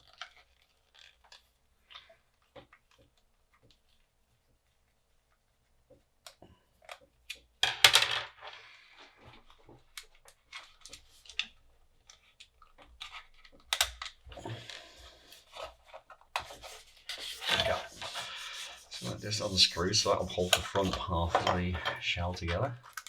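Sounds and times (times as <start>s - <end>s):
plastic parts rattling and scraping: 0.0s - 4.0s, 6.8s - 23.0s.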